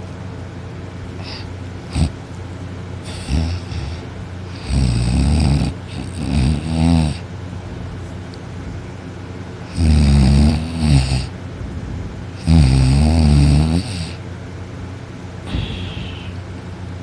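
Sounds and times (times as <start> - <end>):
man snoring loudly: 1.2 - 2.1, 3.0 - 7.2, 9.7 - 11.3, 12.4 - 14.2.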